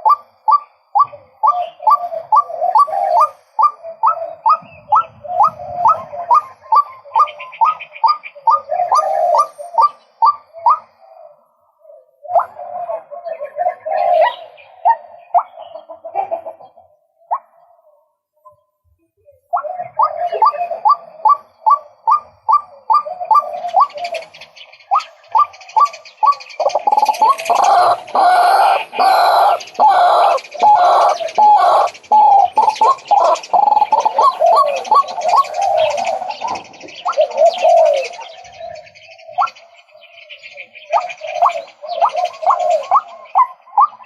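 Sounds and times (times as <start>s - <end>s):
waterhen calling: 0.0s - 11.2s, 19.5s - 38.6s, 40.4s - 44.0s.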